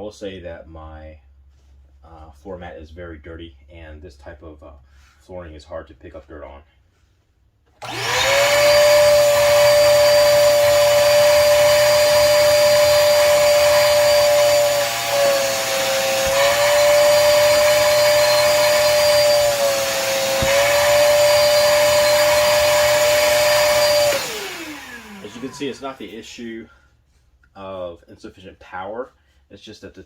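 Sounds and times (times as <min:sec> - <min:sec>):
wet dry vacuum whining: 0:07.8 - 0:26.6.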